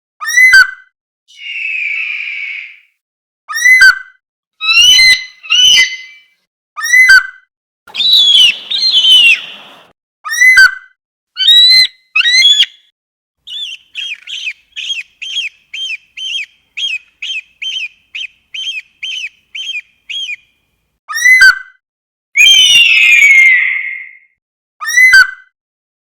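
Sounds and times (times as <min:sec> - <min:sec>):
eagle crying: 0:01.3 - 0:02.8, 0:04.6 - 0:06.2, 0:07.9 - 0:10.7, 0:11.4 - 0:12.8, 0:13.5 - 0:20.4
eagle long falling scream: 0:01.3 - 0:02.9, 0:04.6 - 0:06.2, 0:07.9 - 0:10.6, 0:22.4 - 0:24.3
eagle piping notes: 0:07.9 - 0:09.9, 0:13.5 - 0:20.4.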